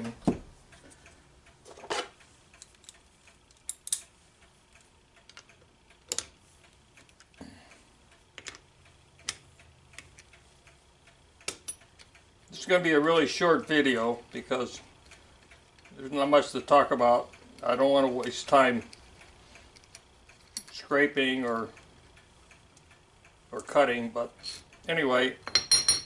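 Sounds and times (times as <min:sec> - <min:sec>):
metal parts clicking and knocking: 0:01.6 - 0:04.1, 0:25.4 - 0:26.0.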